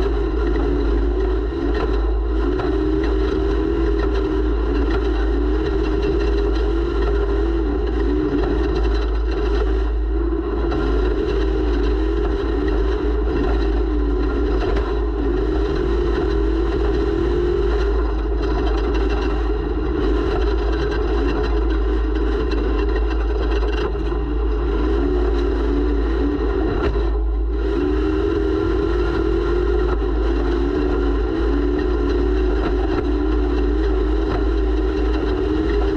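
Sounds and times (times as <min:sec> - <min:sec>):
off-road vehicle engine running: 0:00.0 - 0:35.9.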